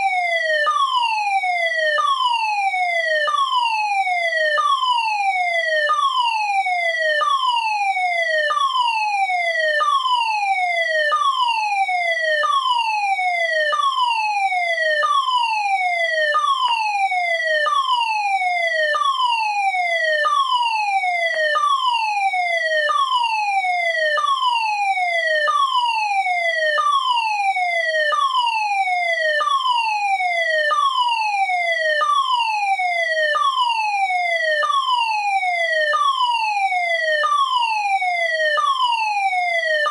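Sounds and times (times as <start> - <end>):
fire alarm falling tone: 0.0 - 39.9.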